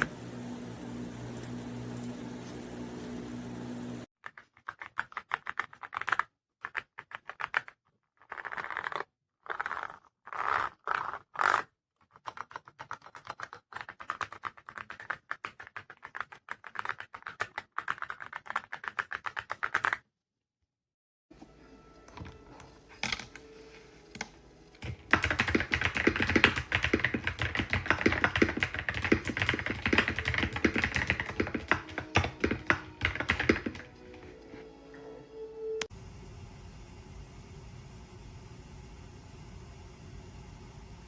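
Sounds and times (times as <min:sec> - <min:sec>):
mechanical keyboard typing: 0:12.2 - 0:20.0, 0:24.2 - 0:34.3.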